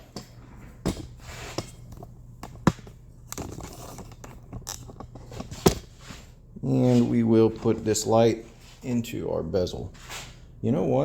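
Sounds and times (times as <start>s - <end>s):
handling clicks and knocks: 0.0s - 6.2s
rustling and scraping: 0.0s - 10.5s
low steady hum: 0.0s - 11.0s.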